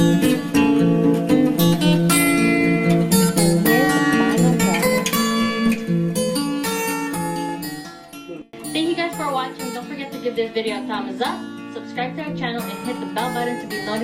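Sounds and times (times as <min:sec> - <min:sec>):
strummed acoustic guitar: 0:00.0 - 0:14.0.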